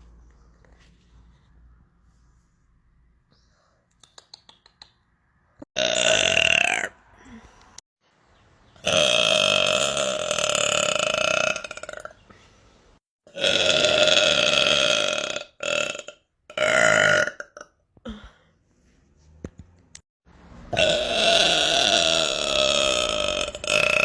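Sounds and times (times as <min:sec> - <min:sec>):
person burping loudly: 0:05.8 - 0:07.4, 0:08.8 - 0:12.2, 0:13.3 - 0:18.2, 0:20.7 - 0:24.0.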